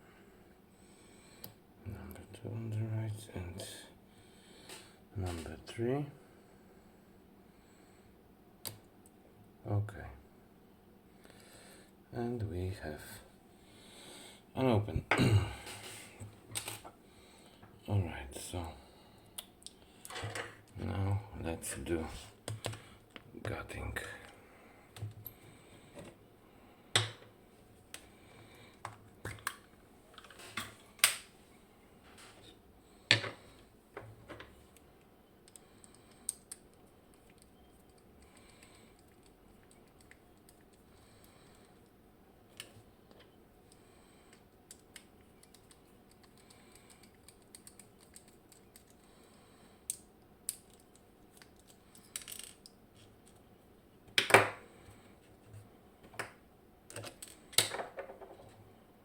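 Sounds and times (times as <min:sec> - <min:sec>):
metallic clicks of lock parts: 0:44.7 - 0:49.0, 0:49.9 - 0:53.4, 0:56.9 - 0:57.8.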